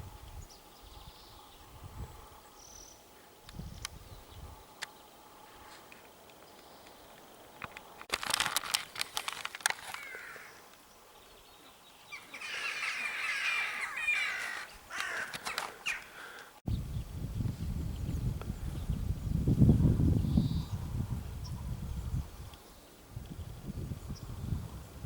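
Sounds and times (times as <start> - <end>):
jackdaws calling: 9.6 - 10.8, 12.0 - 16.6.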